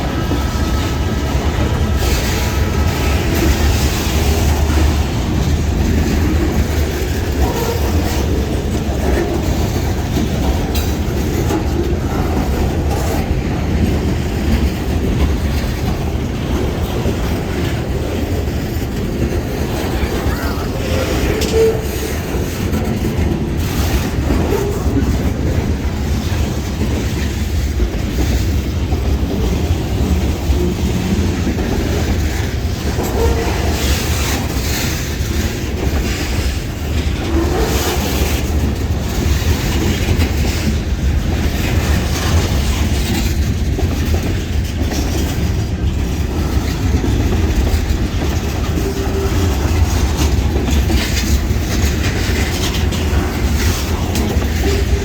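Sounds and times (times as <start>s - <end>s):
freight train rumbling past: 0.0s - 55.0s
wheels clicking over rail joints: 0.0s - 55.0s.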